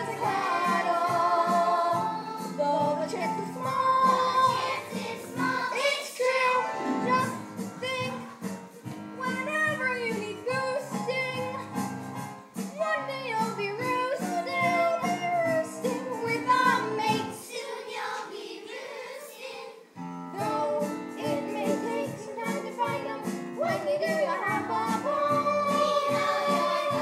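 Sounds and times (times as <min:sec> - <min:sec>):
young voices singing: 0:00.0 - 0:08.4, 0:14.0 - 0:27.0
instrumental accompaniment: 0:00.0 - 0:17.4, 0:20.0 - 0:27.0.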